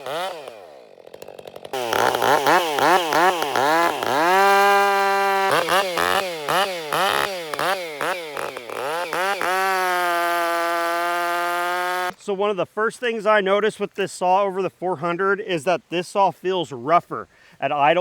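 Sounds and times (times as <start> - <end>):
chainsaw revving: 0.0 - 12.2.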